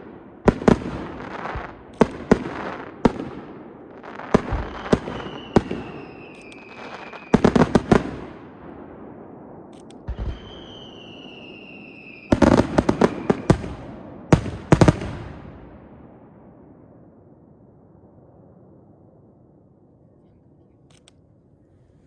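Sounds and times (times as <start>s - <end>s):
fireworks bursting with sharp bangs: 0.0s - 16.7s
falling firework whistles: 4.1s - 7.6s, 10.1s - 13.7s.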